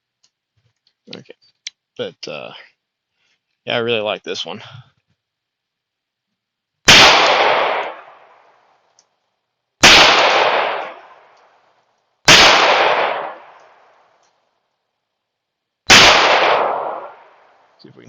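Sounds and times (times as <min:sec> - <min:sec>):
pistol shots with echo: 0:06.9 - 0:08.3, 0:09.8 - 0:11.3, 0:12.3 - 0:13.8, 0:15.9 - 0:17.5.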